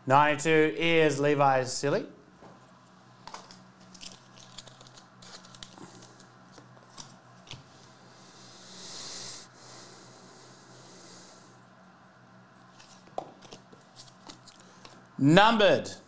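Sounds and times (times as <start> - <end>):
faint electrical hum: 0.0 - 16.0
cards and packaging rustling: 3.2 - 7.7, 12.7 - 15.0.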